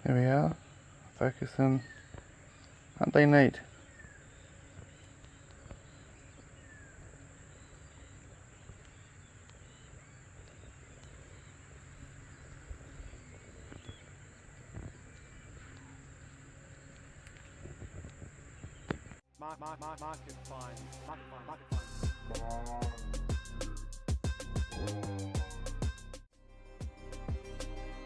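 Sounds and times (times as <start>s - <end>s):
faint soft clicks: 8.6s - 11.8s, 13.6s - 19.2s.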